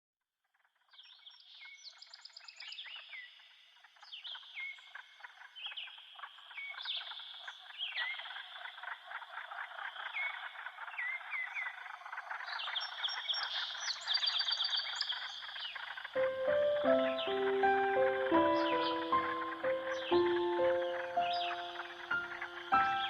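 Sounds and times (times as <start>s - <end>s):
birds chirping: 9.8s - 23.0s
high bird trill: 16.2s - 23.0s.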